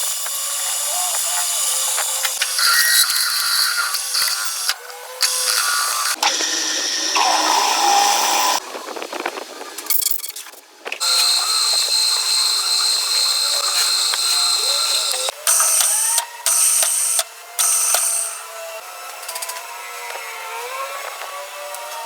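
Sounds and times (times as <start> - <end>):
machine tool cutting metal: 0.0 - 8.6, 11.0 - 19.6.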